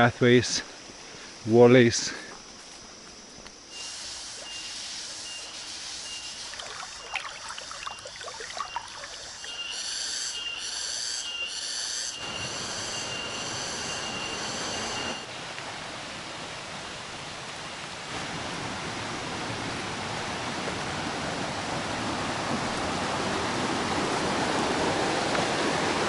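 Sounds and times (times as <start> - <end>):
steady rushing hiss: 0.0 - 7.1, 9.8 - 19.8
high-pitched insect tone: 0.0 - 15.3
insect pulsing buzzes: 2.3 - 15.3.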